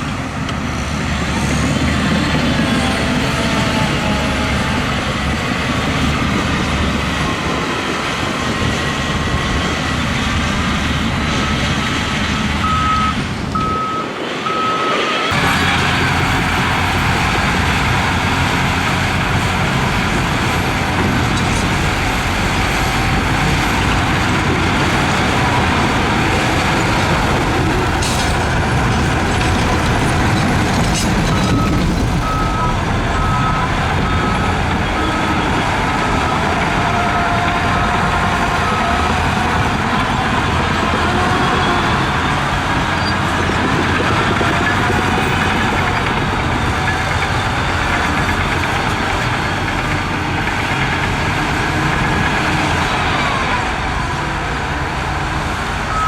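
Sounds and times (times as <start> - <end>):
heavy diesel machinery running: 0.0 - 56.0
reversing alarm beeping: 12.6 - 16.4, 31.3 - 37.5.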